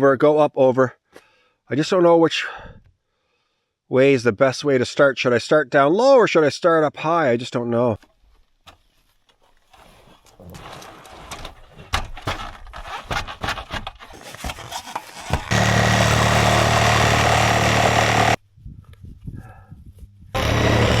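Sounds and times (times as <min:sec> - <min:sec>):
knocks and scrapes on wood: 0:09.7 - 0:15.5
battery saw cutting wood: 0:15.3 - 0:18.4, 0:20.4 - 0:21.0.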